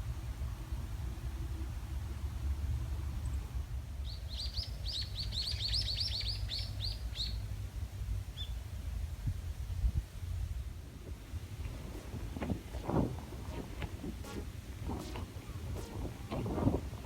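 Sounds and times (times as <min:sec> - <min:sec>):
steady low rumble: 0:10.9 - 0:17.0.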